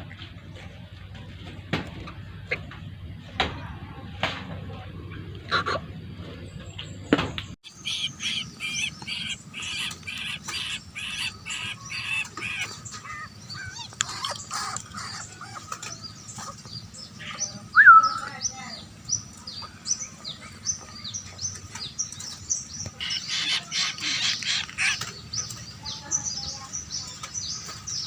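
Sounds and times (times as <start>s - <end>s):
low rumble with clicks: 0.0s - 7.6s
raptor chicks cheeping: 5.5s - 28.0s.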